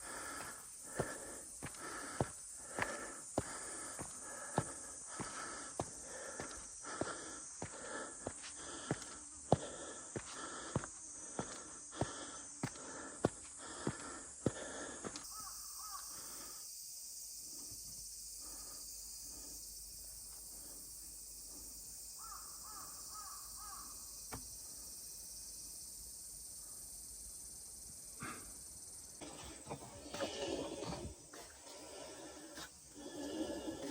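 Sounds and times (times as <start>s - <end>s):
walking footsteps: 0.2s - 15.2s
crow cawing: 15.3s - 16.0s, 22.2s - 23.9s.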